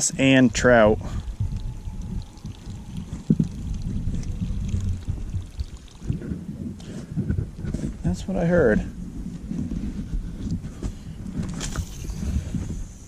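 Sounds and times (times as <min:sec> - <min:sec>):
low uneven rumble: 0:00.0 - 0:13.0
water lapping against a boat: 0:01.0 - 0:07.3.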